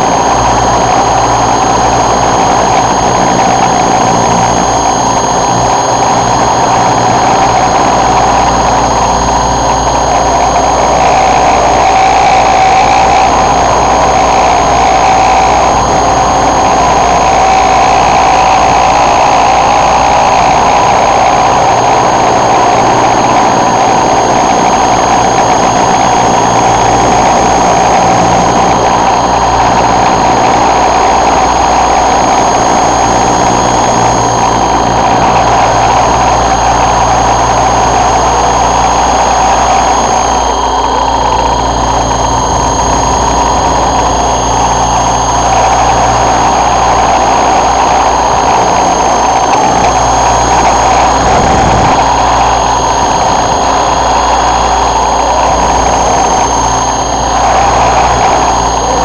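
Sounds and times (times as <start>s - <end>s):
model helicopter motor whine: 0.0s - 59.0s
low rumble of wind: 45.5s - 54.4s.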